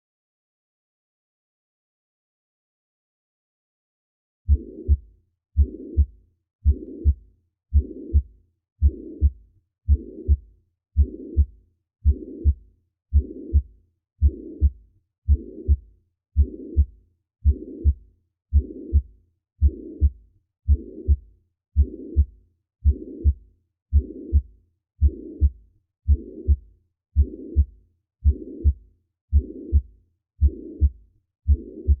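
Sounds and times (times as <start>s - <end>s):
heartbeat thumps: 4.5s - 21.2s, 21.8s - 26.6s, 27.2s - 32.0s.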